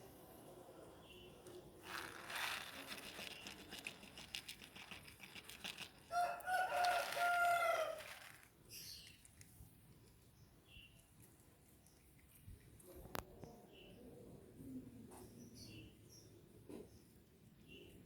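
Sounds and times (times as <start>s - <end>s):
crinkling rustling noise: 1.8s - 8.6s
rooster crowing: 6.1s - 8.3s.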